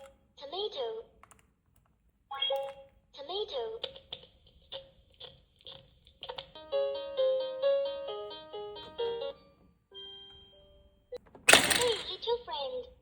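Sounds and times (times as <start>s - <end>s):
toy cash register beeps: 11.5s - 12.4s.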